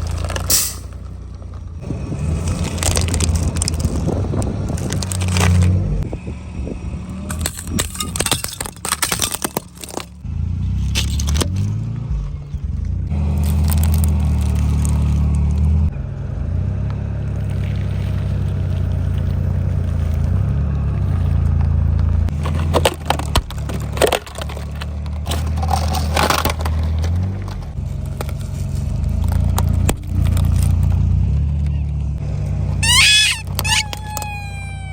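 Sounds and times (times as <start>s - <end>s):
objects cracking under wheels: 0.0s - 1.6s, 2.2s - 6.0s, 7.1s - 11.8s, 13.1s - 15.7s, 17.3s - 31.8s, 32.7s - 34.9s
car engine running low: 0.0s - 34.9s
tyres rolling over objects: 17.5s - 28.4s.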